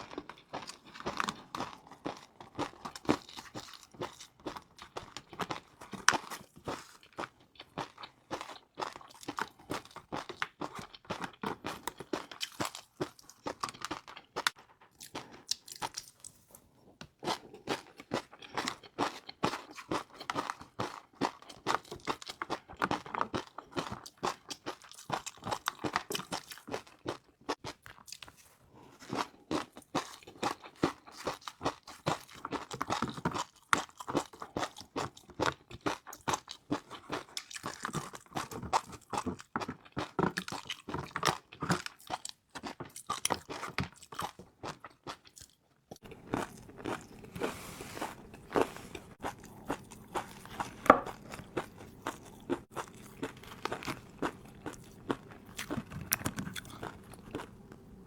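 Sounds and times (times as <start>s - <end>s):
crunching crispy fried noodles: 17.2s - 58.0s.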